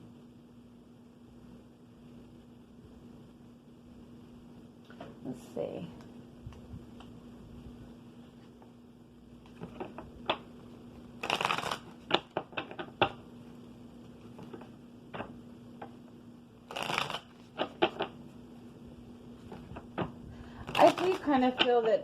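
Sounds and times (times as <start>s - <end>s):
cards being shuffled: 9.4s - 13.2s, 16.6s - 18.2s, 19.4s - 21.9s
cards clicking and tapping: 11.2s - 13.2s, 16.7s - 18.2s.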